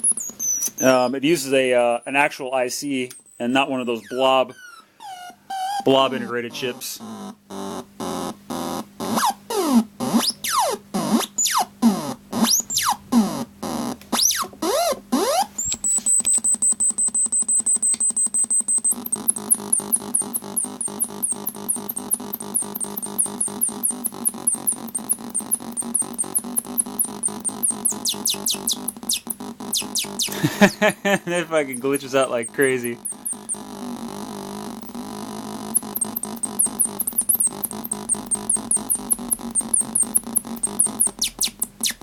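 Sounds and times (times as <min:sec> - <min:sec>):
stuttering electronic beep: 0:00.0 - 0:01.2, 0:15.8 - 0:30.4, 0:31.4 - 0:33.7, 0:35.7 - 0:42.0
rapid pulsing chirps: 0:00.0 - 0:02.3, 0:15.6 - 0:42.0
rapid buzzing pulse: 0:14.2 - 0:42.0
steady high whine: 0:15.7 - 0:33.7.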